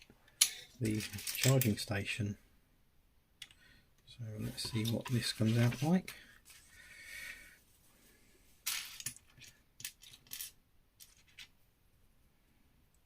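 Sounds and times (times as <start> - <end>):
plastic pieces clicking together: 0.3 - 1.8, 8.7 - 11.5
plastic pieces rustling: 0.4 - 1.7.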